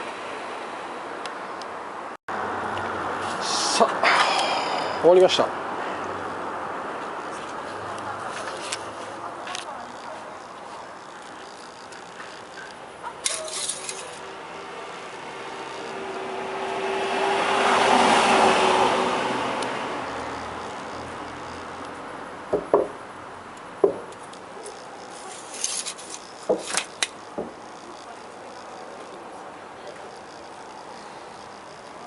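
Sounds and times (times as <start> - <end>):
vehicle passing by: 2.3 - 11.1, 14.2 - 23.4
sharp knocks and clicks: 22.5 - 23.0, 23.8 - 24.4, 26.1 - 27.7.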